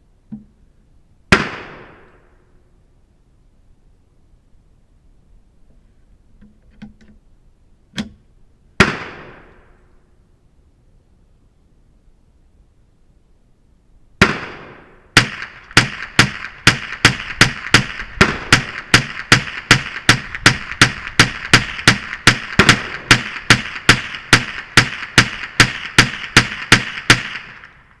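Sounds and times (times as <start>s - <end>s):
rifle shots with ringing tail: 1.3s - 2.3s, 8.8s - 9.8s, 14.2s - 27.8s.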